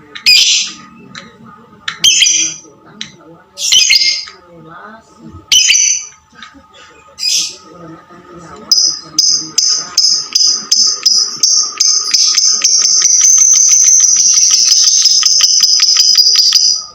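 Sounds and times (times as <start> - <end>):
lovebird rapid chatter: 8.7 - 16.9.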